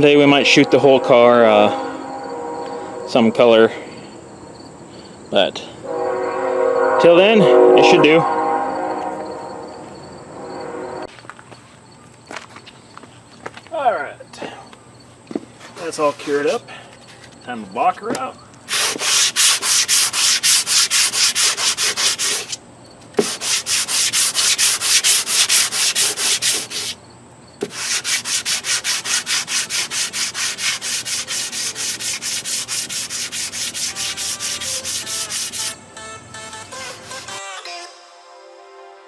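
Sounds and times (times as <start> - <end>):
sanding block rubbing back and forth: 15.8 - 16.6, 18.7 - 22.6, 23.2 - 27.0, 27.6 - 35.8, 36.7 - 37.4.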